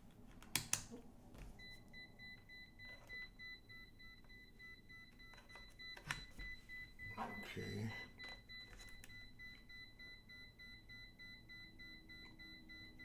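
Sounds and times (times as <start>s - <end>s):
high electronic beep: 1.7s - 13.0s.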